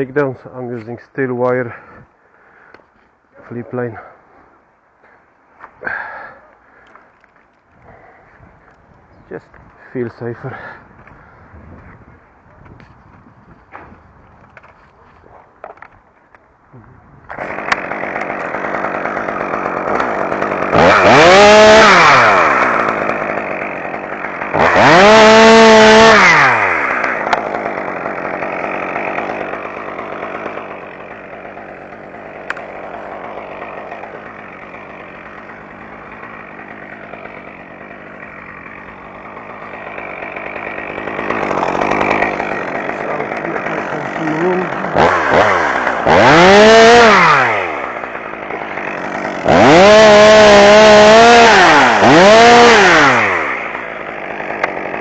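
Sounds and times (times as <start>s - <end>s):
chainsaw idling and revving: 5.9s - 8.8s, 9.9s - 11.0s, 17.3s - 55.0s.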